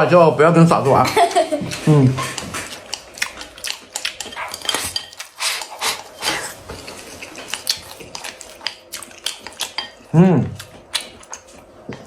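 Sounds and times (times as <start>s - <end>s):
utensils clinking and scraping bowl: 1.7s - 12.0s.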